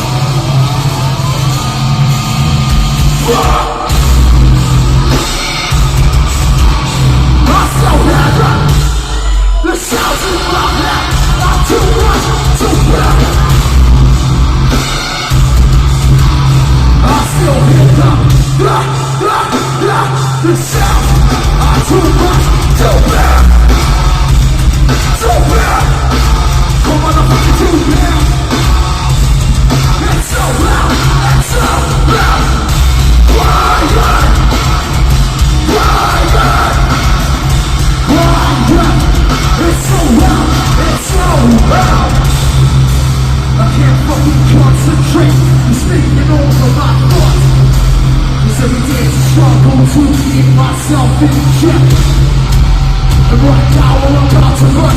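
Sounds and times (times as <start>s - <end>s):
nu-metal band playing: 0.0s - 54.9s
screamed vocals: 3.2s - 4.0s, 7.4s - 13.8s, 17.1s - 23.7s, 25.1s - 26.2s, 30.0s - 35.0s, 35.6s - 37.3s.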